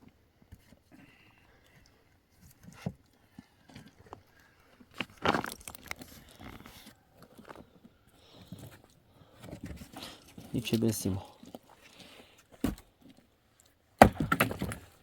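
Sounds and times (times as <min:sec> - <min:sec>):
rustling and crunching handling noises: 0:02.2 - 0:13.8.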